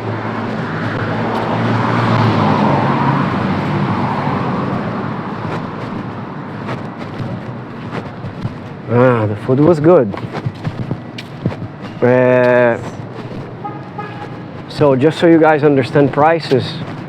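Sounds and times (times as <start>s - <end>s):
car passing close by: 0.0s - 7.2s.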